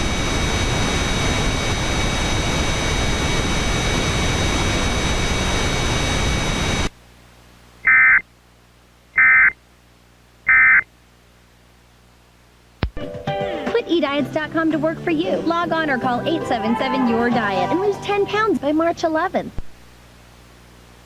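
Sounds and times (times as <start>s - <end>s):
loud static hiss: 0.0s - 13.0s, 17.4s - 21.0s
faint steady high tones: 7.8s - 8.2s, 10.5s - 10.9s
warbling data-tone bursts: 7.8s - 8.2s, 9.2s - 9.6s, 10.5s - 10.9s.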